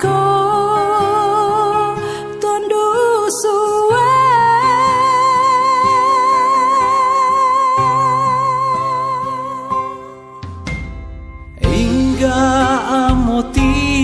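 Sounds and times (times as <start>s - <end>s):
backing chords and bass: 10.4s - 14.0s.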